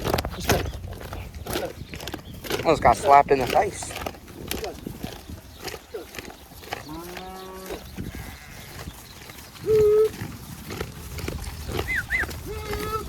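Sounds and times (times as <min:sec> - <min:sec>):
cattle bawling: 0:05.8 - 0:08.7, 0:09.6 - 0:13.0.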